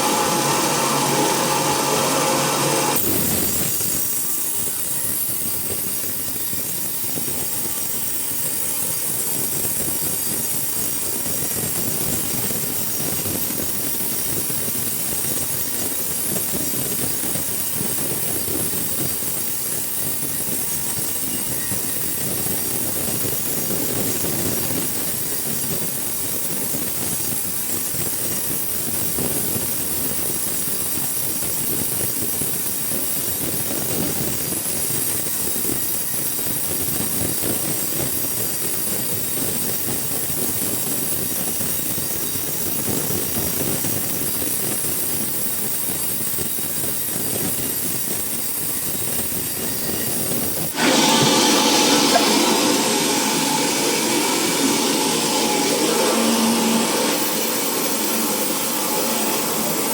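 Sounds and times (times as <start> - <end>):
sawmill machinery running: 0.0 - 6.6, 50.0 - 59.9.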